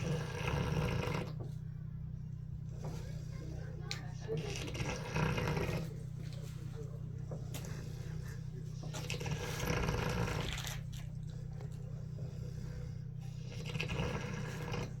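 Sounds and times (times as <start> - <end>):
pig snoring: 0.0 - 1.6, 2.7 - 15.0.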